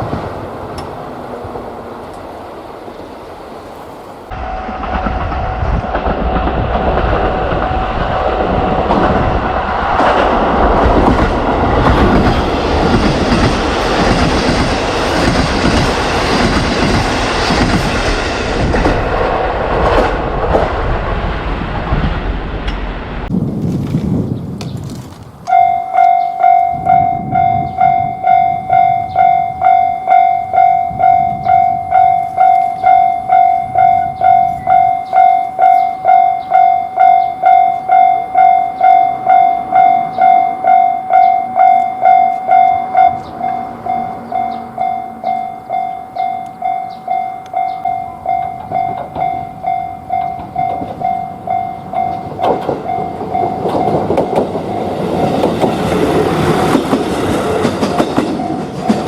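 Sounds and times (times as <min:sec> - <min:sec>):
train approaching: 0:00.0 - 0:59.0
railroad crossing bell ringing: 0:25.4 - 0:59.0.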